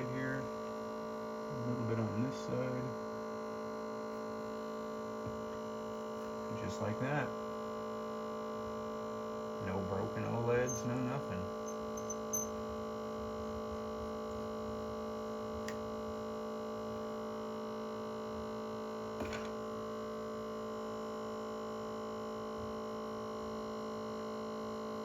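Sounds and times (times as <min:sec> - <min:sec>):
machine electrical hum: 0:00.0 - 0:25.0.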